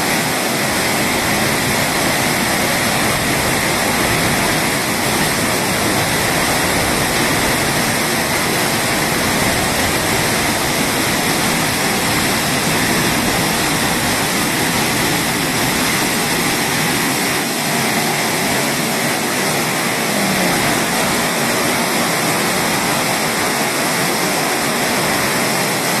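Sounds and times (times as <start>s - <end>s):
waterfall rushing: 0.0s - 26.0s.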